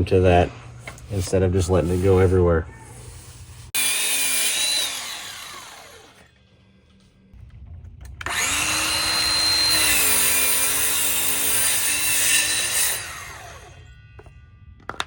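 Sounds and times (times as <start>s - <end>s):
miter saw motor running: 3.8s - 6.3s, 8.2s - 11.0s.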